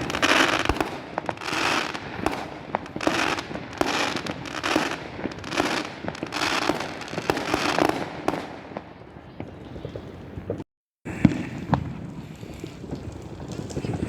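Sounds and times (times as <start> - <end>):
fireworks hissing bursts: 0.0 - 8.4
fireworks cracks and pops: 0.0 - 14.0.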